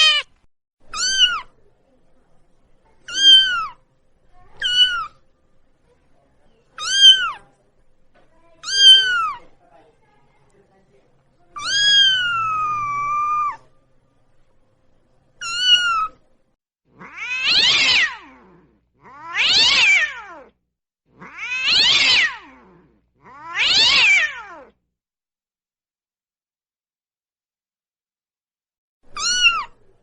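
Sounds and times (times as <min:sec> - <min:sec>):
cat meowing: 0:00.0 - 0:00.3, 0:00.9 - 0:01.6, 0:03.0 - 0:03.8, 0:04.6 - 0:05.2, 0:06.8 - 0:07.4, 0:08.6 - 0:09.5, 0:11.6 - 0:13.7, 0:15.4 - 0:16.2, 0:17.0 - 0:20.6, 0:21.2 - 0:24.8, 0:29.1 - 0:29.8.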